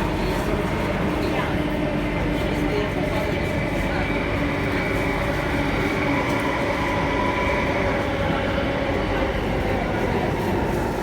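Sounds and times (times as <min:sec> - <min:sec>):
metro train running gear rumble: 0:00.0 - 0:11.0.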